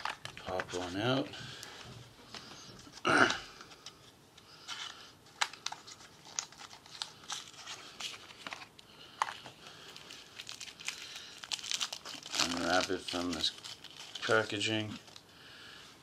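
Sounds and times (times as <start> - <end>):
packaging crinkling and tearing: 0.0 - 0.9, 4.7 - 15.3.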